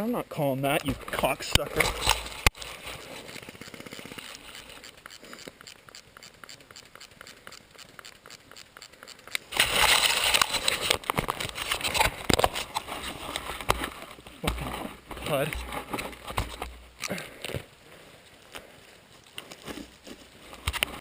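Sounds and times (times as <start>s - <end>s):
crackling and rustling with clicks: 0.6s - 21.0s
loud rustling: 9.5s - 16.7s.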